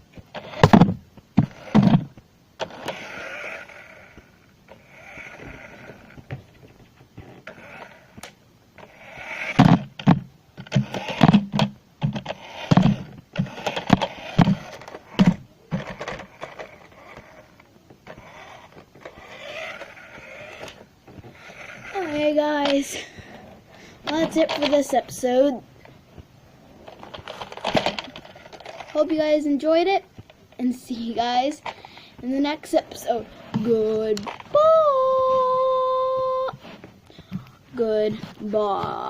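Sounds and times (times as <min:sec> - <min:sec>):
toy car motor whirring: 0:00.3 - 0:00.8, 0:01.4 - 0:06.4, 0:07.2 - 0:25.5, 0:26.9 - 0:29.5.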